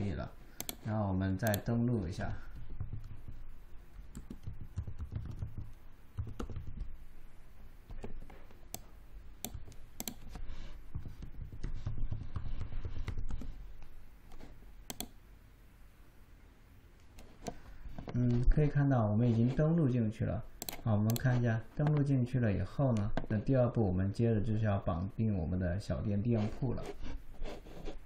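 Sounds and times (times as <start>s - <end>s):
typing on computer keyboard: 0.6s - 0.8s, 4.1s - 6.9s, 7.9s - 10.3s, 10.9s - 13.6s, 14.9s - 15.1s.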